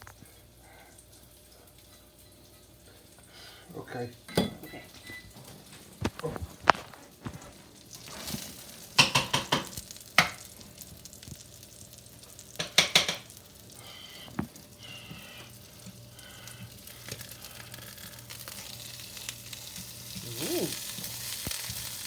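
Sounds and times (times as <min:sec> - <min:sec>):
burgers sizzling in a frying pan: 0:04.8 - 0:22.0
utensil clattering against pan: 0:09.0 - 0:10.3, 0:12.6 - 0:13.3.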